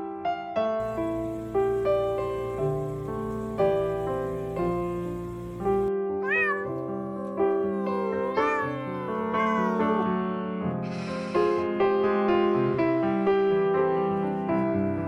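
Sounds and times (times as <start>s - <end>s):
gentle piano music: 0.0s - 15.0s
short hissing burst: 0.8s - 5.9s
cat meowing: 6.2s - 10.2s.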